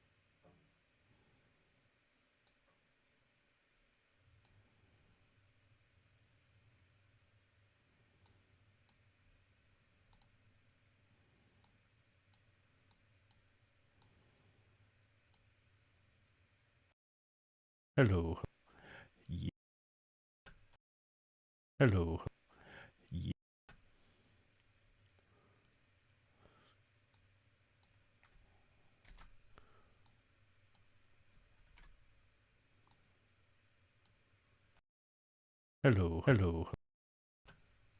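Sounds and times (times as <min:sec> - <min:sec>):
low room hum: 0:00.0 - 0:17.0, 0:21.8 - 0:34.8
computer mouse clicks: 0:10.1 - 0:10.4.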